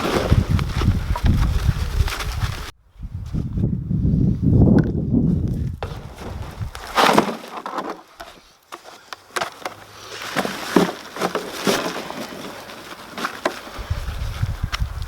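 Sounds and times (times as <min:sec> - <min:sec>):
hands digging in dry soil: 0:05.6 - 0:15.0
scraping and knocking: 0:05.8 - 0:14.0.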